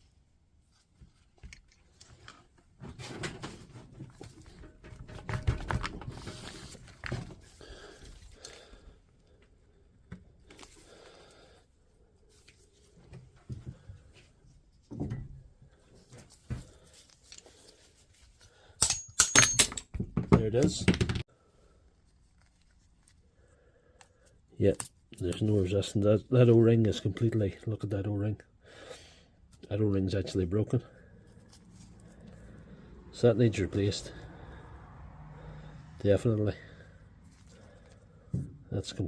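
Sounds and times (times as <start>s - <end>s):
metal parts scraping and knocking: 1.5s - 7.3s
ringing metal clanks: 18.8s - 19.8s.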